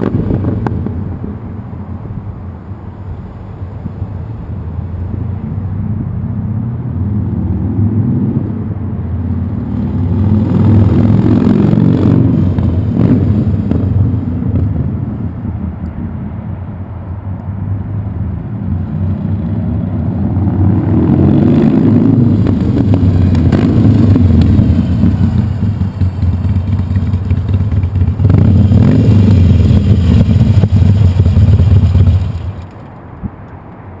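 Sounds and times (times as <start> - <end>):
motorcycle engine deep exhaust: 19.1 - 32.8.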